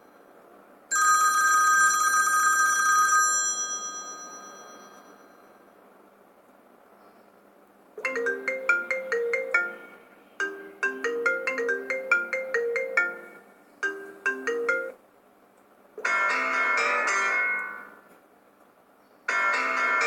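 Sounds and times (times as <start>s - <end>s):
phone ringtone bell-like melody: 0.9s - 5.6s, 8.0s - 15.0s, 16.0s - 17.9s, 19.3s - 20.0s.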